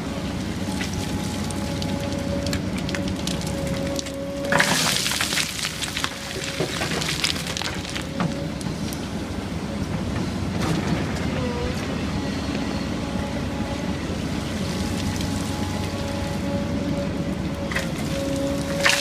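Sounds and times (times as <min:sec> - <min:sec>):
heavy diesel machinery running: 0:00.0 - 0:19.0
hydraulic whine: 0:10.6 - 0:19.0.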